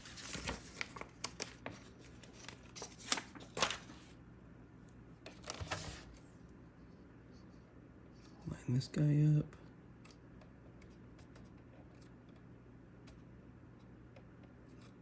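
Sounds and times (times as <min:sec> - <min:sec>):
crinkly plastic sheet rustling: 0:00.0 - 0:04.1.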